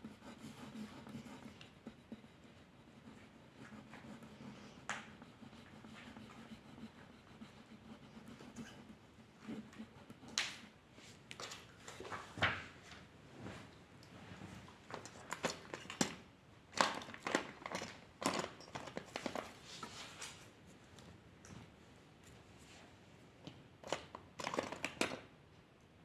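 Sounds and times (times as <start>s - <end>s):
pencil scratching on paper: 0.0s - 10.3s.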